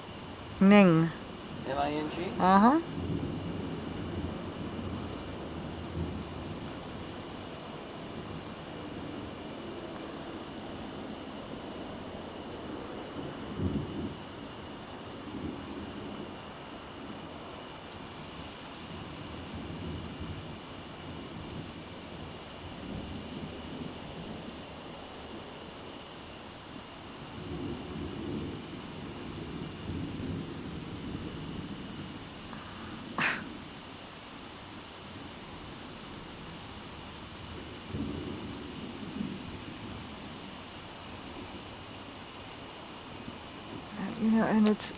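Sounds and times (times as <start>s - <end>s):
high insect chirps: 0.0s - 44.9s
night insects trilling: 0.0s - 44.9s.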